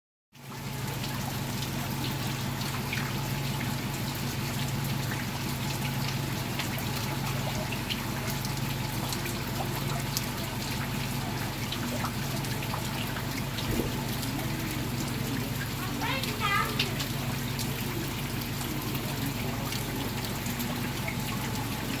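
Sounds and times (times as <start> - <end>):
rain falling: 0.4 - 22.0
water dripping: 0.4 - 22.0
water trickling: 0.4 - 22.0
steady low hum: 13.5 - 16.0.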